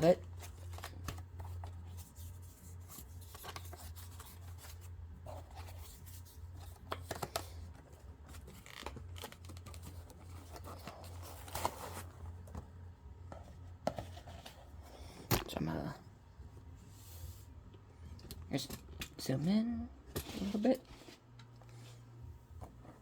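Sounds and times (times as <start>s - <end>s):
packaging rustling and clicking: 3.1s - 12.8s.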